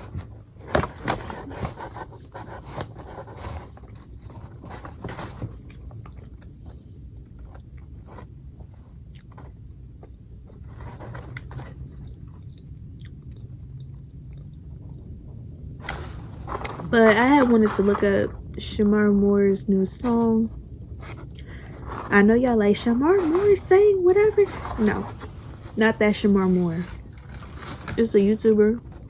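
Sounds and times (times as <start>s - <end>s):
person chewing food: 5.6s - 10.7s.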